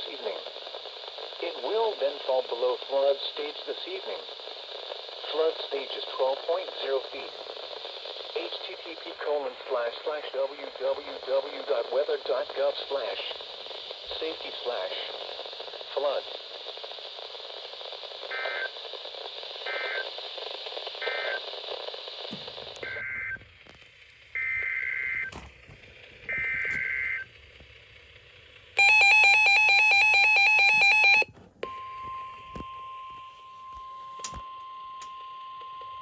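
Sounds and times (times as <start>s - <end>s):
radio static: 0.0s - 31.3s
steady warning alarm tone: 26.3s - 27.3s, 28.8s - 36.0s.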